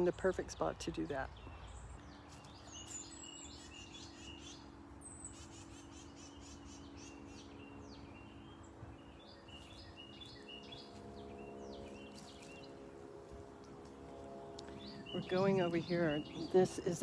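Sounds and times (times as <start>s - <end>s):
low hum: 0.0s - 17.0s
songbirds chirping: 0.0s - 17.0s.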